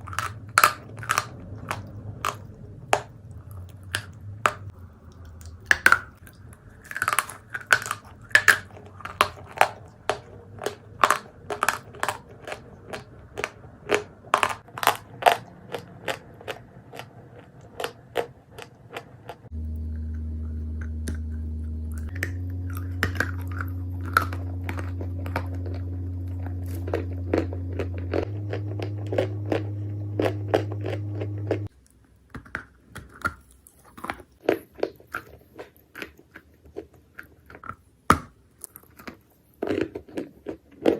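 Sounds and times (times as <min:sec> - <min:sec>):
low hum: 0:00.0 - 0:14.7, 0:19.5 - 0:31.7
clay crunching when chewed: 0:00.0 - 0:40.9.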